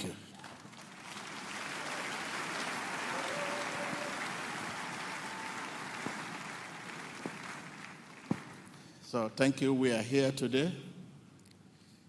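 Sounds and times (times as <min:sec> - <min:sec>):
congregation applauding: 0:00.0 - 0:09.0.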